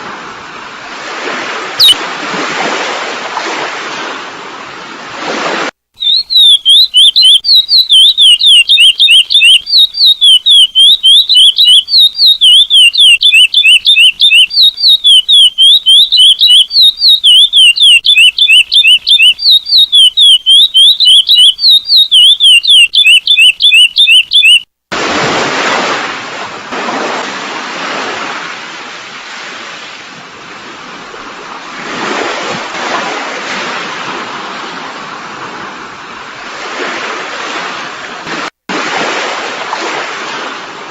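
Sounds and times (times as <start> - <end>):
sea waves breaking: 0.0 - 15.2, 24.9 - 40.9
bird singing sliding whistles: 1.8 - 2.0, 6.0 - 24.7.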